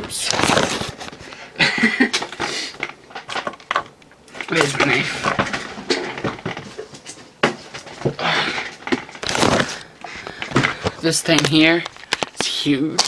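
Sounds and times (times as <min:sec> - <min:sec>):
packaging scraping and crinkling: 0:00.0 - 0:01.4, 0:04.3 - 0:13.0
packaging clicks and knocks: 0:08.8 - 0:13.0.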